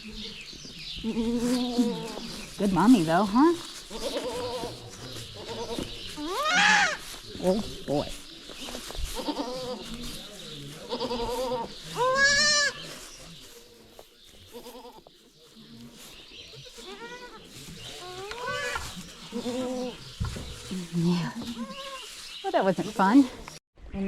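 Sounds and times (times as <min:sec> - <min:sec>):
goats bleating: 0:03.9 - 0:07.0, 0:09.2 - 0:10.0, 0:10.8 - 0:12.8, 0:14.5 - 0:15.1, 0:16.6 - 0:20.0, 0:21.4 - 0:22.1.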